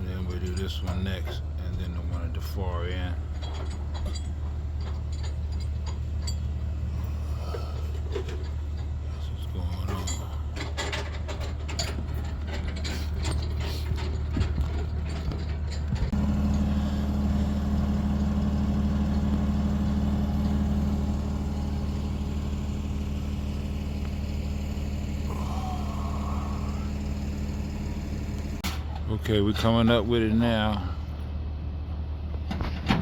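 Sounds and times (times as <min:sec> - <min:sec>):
rapid metallic clicking and rattling: 0:00.4 - 0:06.7, 0:07.8 - 0:16.2
crane engine running: 0:00.4 - 0:29.3.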